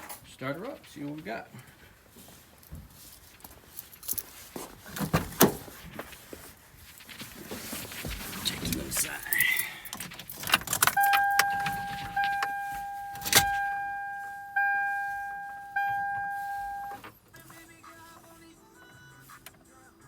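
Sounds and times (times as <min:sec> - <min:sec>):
sharp clicks: 0:09.4 - 0:13.6
dashboard warning chime: 0:10.4 - 0:17.1.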